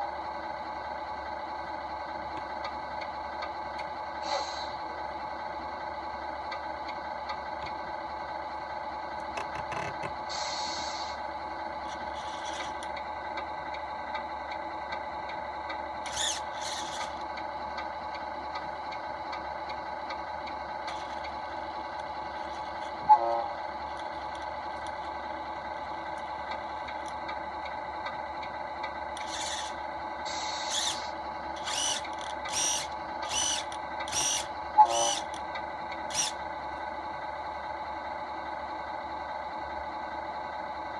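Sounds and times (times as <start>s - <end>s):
servo whirring: 11.9s - 12.9s, 16.0s - 17.2s, 20.8s - 21.3s, 29.2s - 35.4s, 36.1s - 36.4s.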